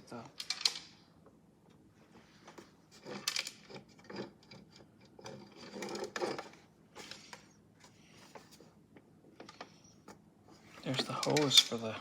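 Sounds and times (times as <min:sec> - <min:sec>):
plastic parts clicking and knocking: 0:00.3 - 0:01.0, 0:02.5 - 0:07.5.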